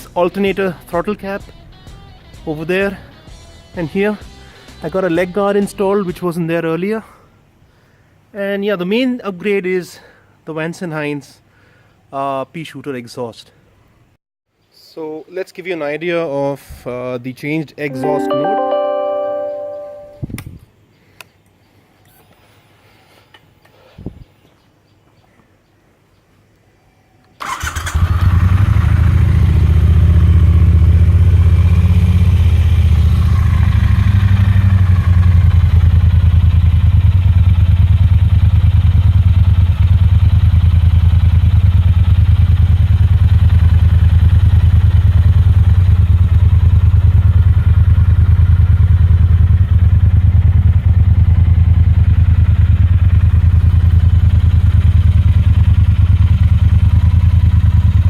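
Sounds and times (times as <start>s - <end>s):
motorcycle engine starting and idling: 27.4s - 58.0s.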